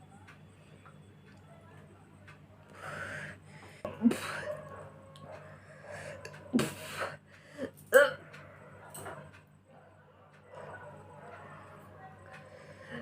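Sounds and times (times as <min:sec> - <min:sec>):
breathing: 0:02.7 - 0:04.5, 0:05.3 - 0:06.2, 0:06.8 - 0:07.8, 0:12.4 - 0:13.0.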